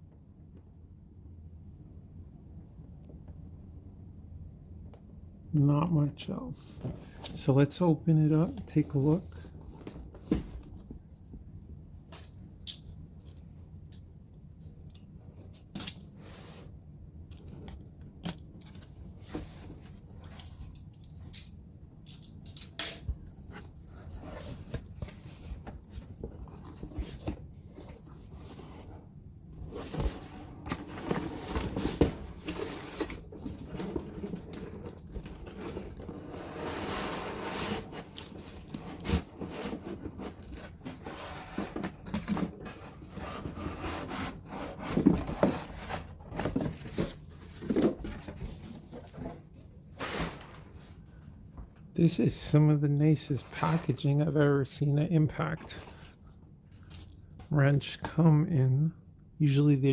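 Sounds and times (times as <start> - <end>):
cardboard packaging rustling: 23.3 - 51.2.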